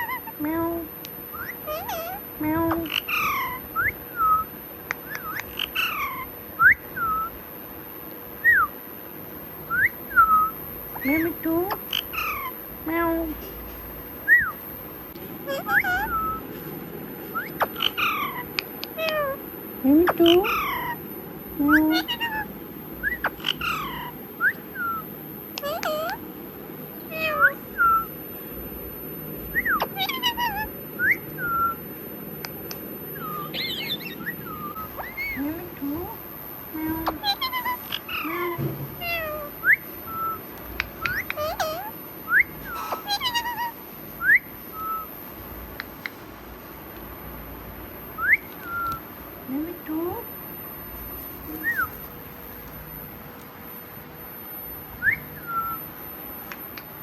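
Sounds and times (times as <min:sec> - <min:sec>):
parrot whistled chirps: 0:01.3 - 0:02.2, 0:02.8 - 0:07.4, 0:08.4 - 0:08.7, 0:09.7 - 0:12.6, 0:14.2 - 0:14.6, 0:15.5 - 0:16.5, 0:17.3 - 0:19.4, 0:20.0 - 0:21.0, 0:21.7 - 0:26.2, 0:27.1 - 0:28.2, 0:29.5 - 0:31.8, 0:32.4 - 0:35.6, 0:37.0 - 0:45.1, 0:48.2 - 0:49.0, 0:51.5 - 0:52.0, 0:54.9 - 0:56.9
parrot falling calls: 0:01.5 - 0:03.7, 0:05.2 - 0:06.4, 0:11.7 - 0:12.6, 0:15.4 - 0:16.5, 0:17.3 - 0:19.4, 0:20.0 - 0:21.0, 0:21.8 - 0:24.2, 0:25.6 - 0:26.2, 0:29.6 - 0:31.8, 0:33.2 - 0:35.4, 0:37.1 - 0:40.4, 0:41.0 - 0:45.1.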